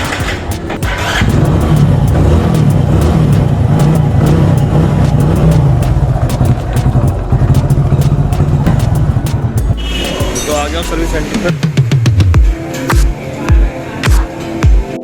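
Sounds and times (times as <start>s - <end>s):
motorcycle engine running: 0.0s - 10.4s.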